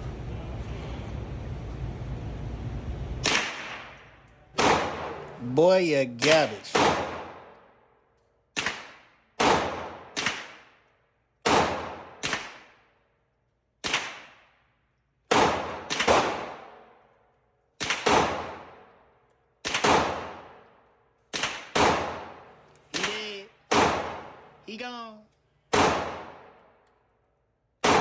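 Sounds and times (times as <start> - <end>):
gunshots with long echo: 3.2 - 7.8, 8.6 - 10.8, 11.4 - 13.0, 13.8 - 14.5, 15.3 - 17.0, 17.8 - 19.0, 19.6 - 24.6, 25.7 - 26.8, 27.8 - 28.0.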